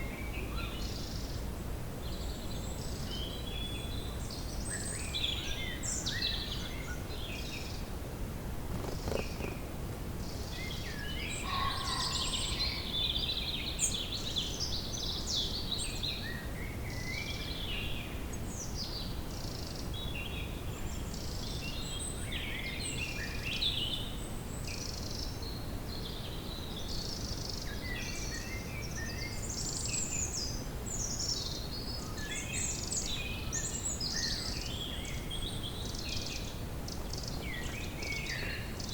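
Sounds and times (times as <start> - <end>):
songbirds singing: 8.7 - 38.9.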